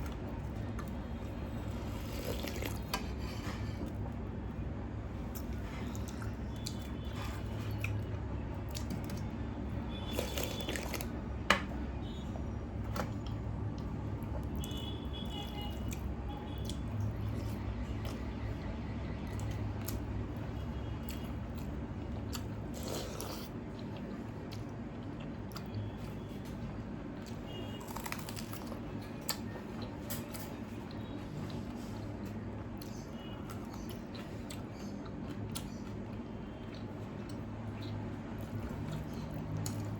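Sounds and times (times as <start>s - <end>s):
wet chewing: 1.6s - 3.1s, 10.0s - 11.2s, 21.0s - 26.1s.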